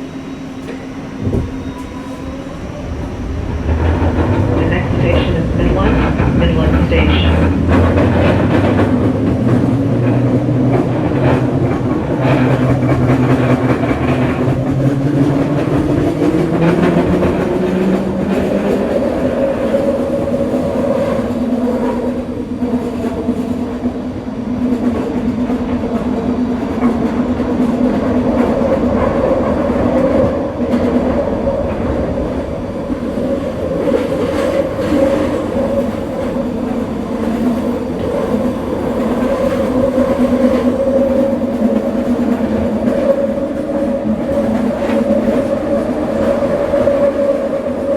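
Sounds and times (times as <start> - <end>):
wheels rumbling on rails: 0.6 - 22.0.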